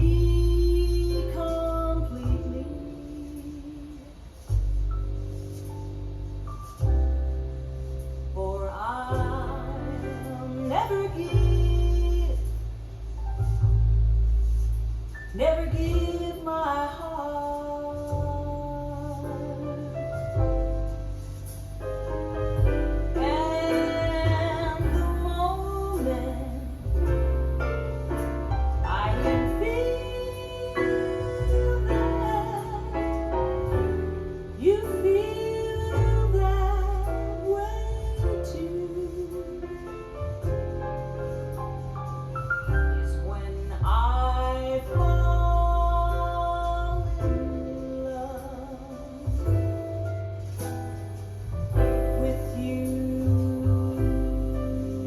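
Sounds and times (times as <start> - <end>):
jazz ballad music: 0.0 - 55.0
piano accompaniment: 0.0 - 55.0
woman singing with vibrato: 23.2 - 27.0, 28.9 - 33.2, 52.0 - 55.0.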